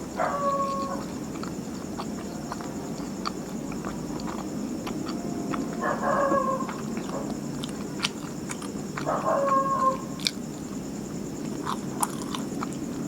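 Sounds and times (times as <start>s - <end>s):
chewing soft food: 0.0s - 13.0s.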